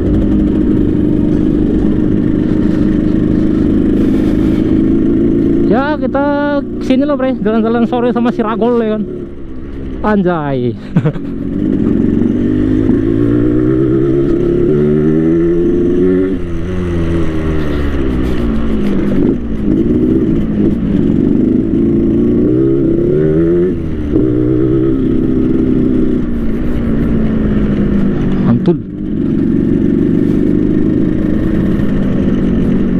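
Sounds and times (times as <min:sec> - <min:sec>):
motorcycle engine revving: 0:00.0 - 0:32.9.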